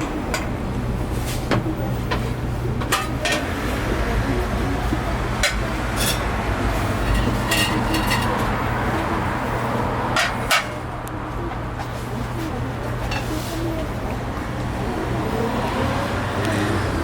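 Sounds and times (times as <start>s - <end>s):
kitchen equipment hum: 1.8s - 11.0s
utensils and dishes clinking: 2.1s - 3.6s, 4.9s - 9.2s, 10.1s - 10.9s, 11.8s - 13.9s.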